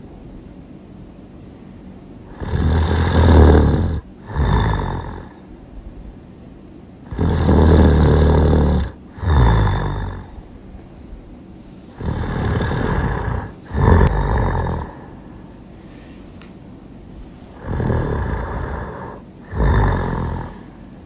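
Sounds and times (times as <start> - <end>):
person snoring: 2.3 - 5.4, 7.1 - 10.5, 11.9 - 15.3, 17.5 - 20.7.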